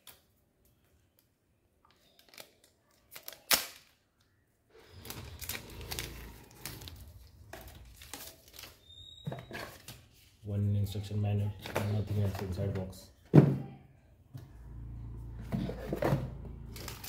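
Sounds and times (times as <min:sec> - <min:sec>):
packaging rustling: 0:04.9 - 0:09.9, 0:16.6 - 0:17.0.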